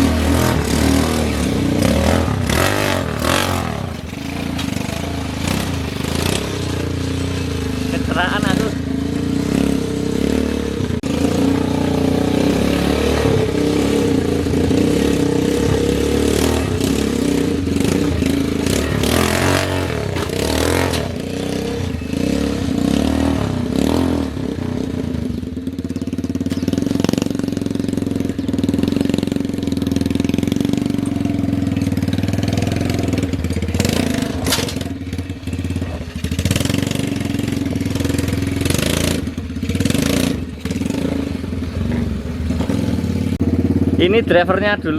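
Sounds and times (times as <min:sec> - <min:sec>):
motorcycle engine running: 0:00.0 - 0:44.9
noisy clatters: 0:00.5 - 0:07.6, 0:29.8 - 0:41.2.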